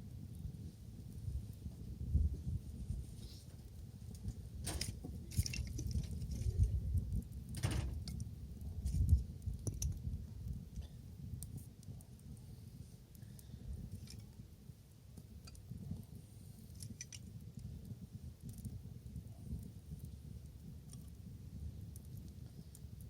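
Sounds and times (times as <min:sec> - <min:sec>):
loud snaps of fire: 0:00.0 - 0:23.0
wood fire crackling: 0:00.0 - 0:23.0.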